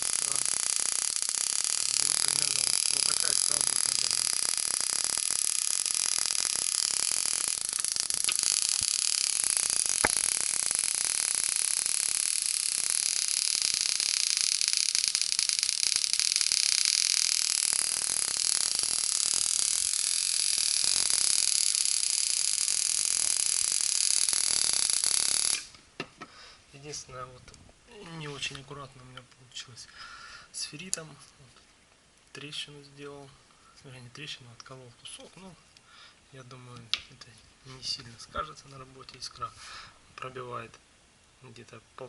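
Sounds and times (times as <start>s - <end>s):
sharp spark ticks: 0.0s - 25.8s
spark gap hissing crackle: 0.0s - 27.1s.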